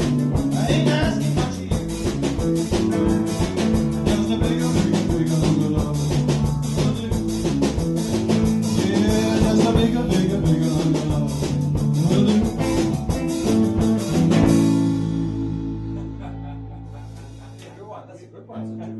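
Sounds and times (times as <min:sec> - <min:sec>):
electric guitar: 0:00.0 - 0:17.7, 0:18.6 - 0:18.9
steady drum beat: 0:00.0 - 0:17.8
person singing: 0:00.4 - 0:02.0, 0:03.3 - 0:07.4, 0:08.6 - 0:13.5.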